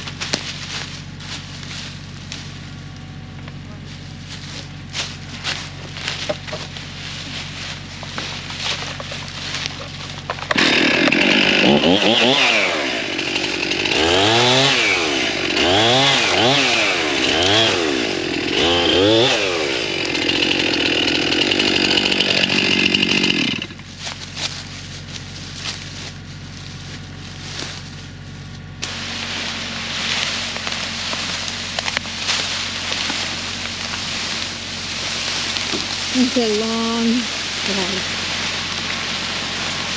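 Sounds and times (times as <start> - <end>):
chainsaw revving: 4.9 - 24.6, 28.8 - 39.9.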